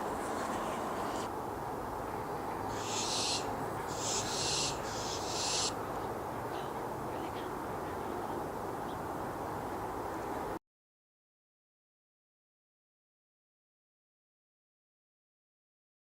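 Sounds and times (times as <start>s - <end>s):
low rushing background noise: 0.0s - 10.6s
owl hissing screeches: 2.7s - 5.8s.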